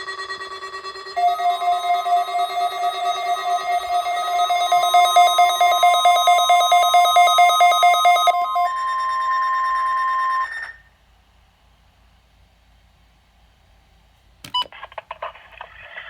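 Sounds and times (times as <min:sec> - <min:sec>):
electronic alarm warbling: 0:00.0 - 0:10.8.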